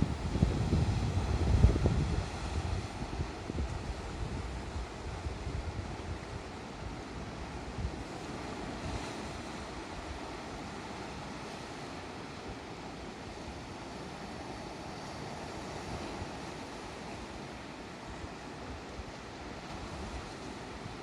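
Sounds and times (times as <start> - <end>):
wind buffeting microphone: 0.0 - 10.2
sea waves washing on shore: 0.0 - 21.0.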